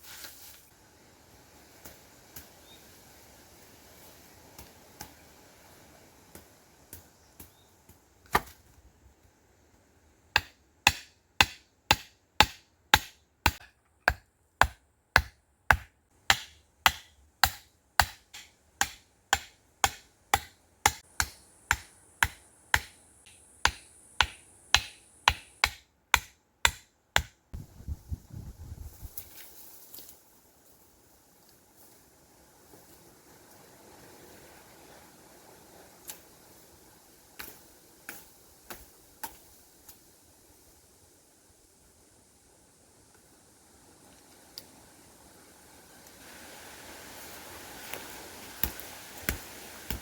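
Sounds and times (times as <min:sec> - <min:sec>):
sharp chopping strikes: 0:08.3 - 0:08.6, 0:10.4 - 0:27.4.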